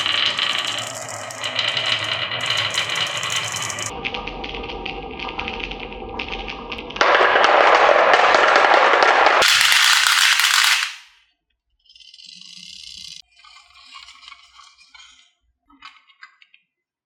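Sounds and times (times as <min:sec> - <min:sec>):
marbles rattling down wooden track: 0:00.0 - 0:03.9, 0:07.0 - 0:11.0.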